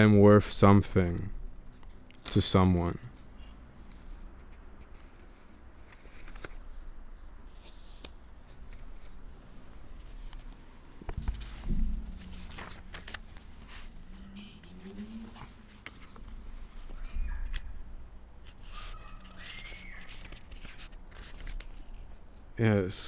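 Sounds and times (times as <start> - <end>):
rustling and handling noises: 3.1 - 22.6
low bump: 11.1 - 12.9.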